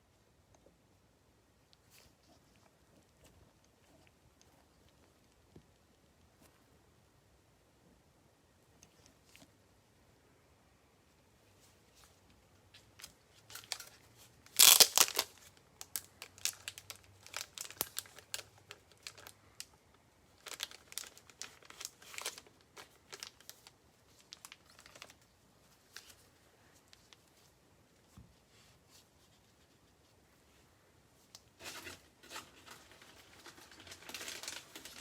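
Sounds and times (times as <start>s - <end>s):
plastic wrapping crinkling: 12.7s - 27.5s, 31.5s - 35.0s.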